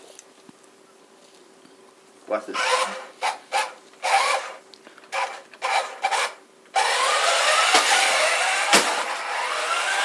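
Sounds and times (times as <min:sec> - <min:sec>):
toy car electric motor whirring: 0:02.6 - 0:10.0.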